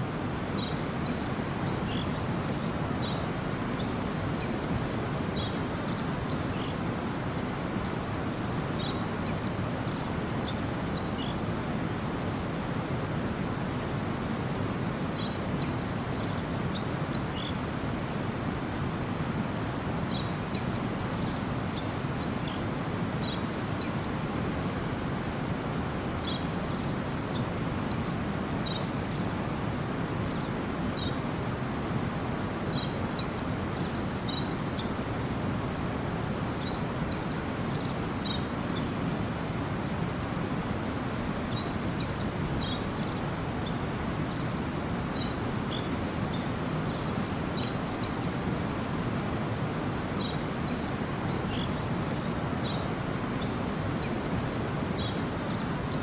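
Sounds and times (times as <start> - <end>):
stream babbling: 25.0 - 56.0.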